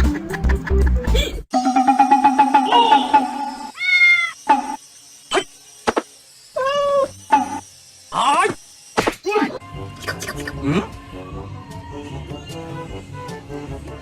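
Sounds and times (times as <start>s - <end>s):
steady buzzing tone: 1.5s - 9.0s.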